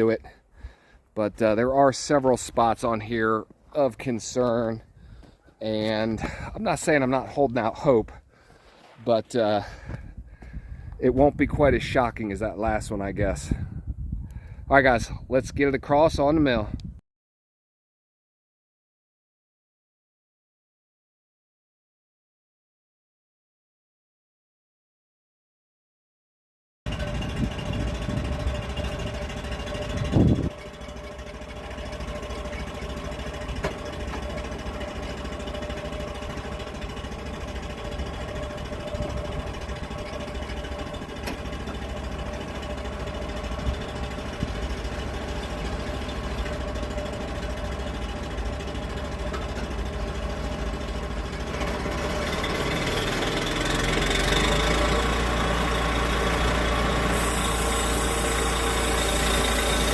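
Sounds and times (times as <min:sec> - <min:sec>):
engine running: 0:00.0 - 0:13.6, 0:26.9 - 0:59.9.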